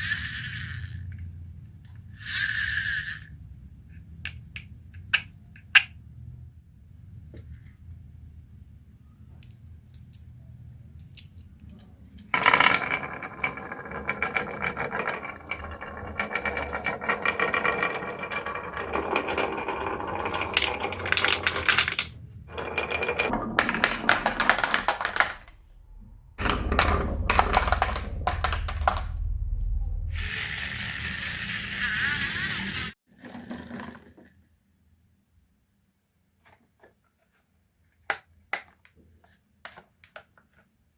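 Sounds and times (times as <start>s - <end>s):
marbles rolling down wooden run: 0.0s - 1.1s, 12.2s - 25.5s, 26.4s - 29.2s.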